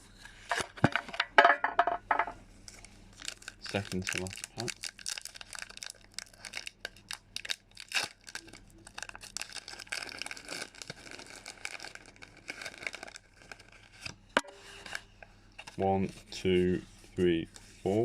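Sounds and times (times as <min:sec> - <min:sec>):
foil wrapper tearing and crinkling: 0:03.2 - 0:14.1.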